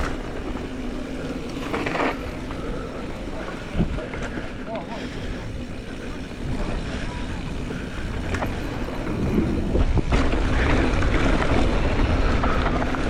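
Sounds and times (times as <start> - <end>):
bike tyres rumbling: 0.0 - 13.0
wind rushing over microphone: 5.2 - 13.0.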